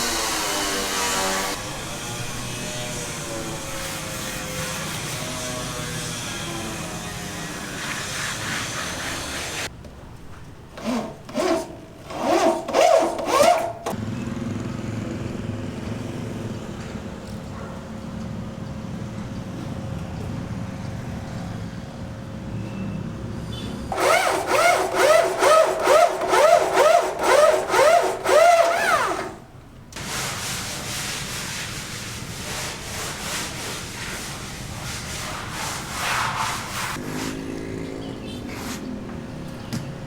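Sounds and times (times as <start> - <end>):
sawing with squeal: 0.0 - 9.7, 10.8 - 14.0, 23.9 - 29.4.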